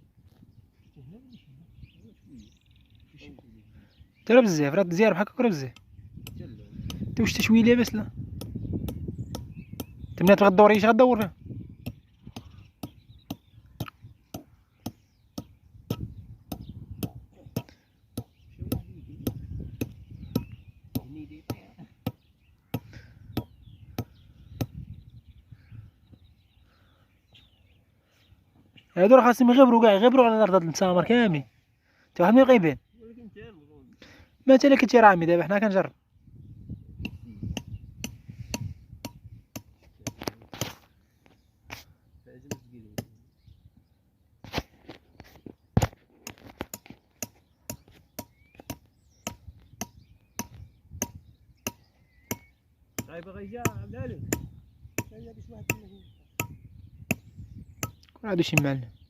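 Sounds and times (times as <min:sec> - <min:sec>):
hammering metal pegs into ground: 0:46.3 - 0:56.6.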